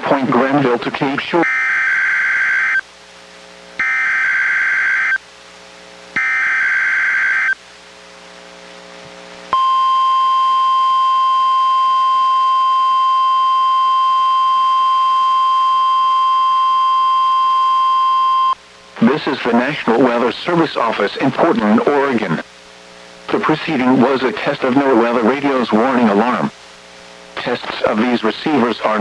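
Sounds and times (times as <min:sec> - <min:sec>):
weather radio alarm tone: 0:00.3 - 0:02.8, 0:03.8 - 0:05.2, 0:06.2 - 0:07.6, 0:09.6 - 0:22.4, 0:23.3 - 0:26.5.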